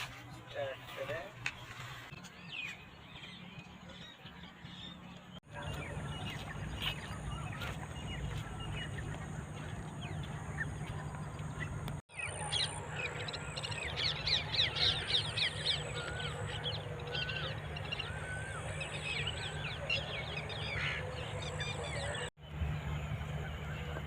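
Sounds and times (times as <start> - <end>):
birds chirping: 0.0 - 24.0
steady low rumble: 4.7 - 12.0.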